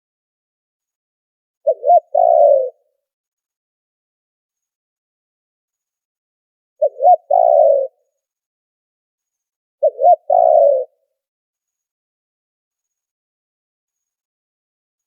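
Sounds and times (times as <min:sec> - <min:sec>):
dove cooing: 0:01.7 - 0:02.8, 0:06.8 - 0:08.0, 0:09.8 - 0:11.0.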